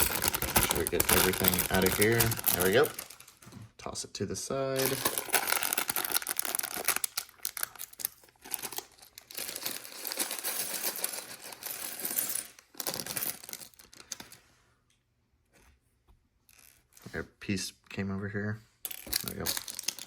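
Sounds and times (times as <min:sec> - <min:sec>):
plastic bag crinkling: 0:00.0 - 0:03.5, 0:04.8 - 0:10.4
plastic pieces clattering: 0:00.0 - 0:03.6, 0:04.8 - 0:14.4, 0:18.9 - 0:20.0.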